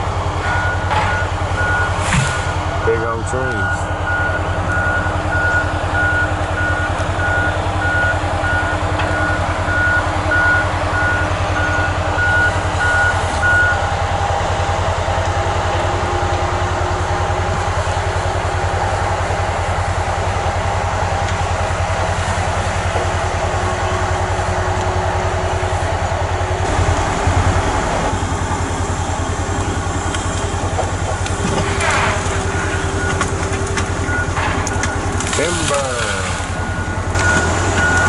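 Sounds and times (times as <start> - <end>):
heavy diesel machinery running: 0.0 - 38.0.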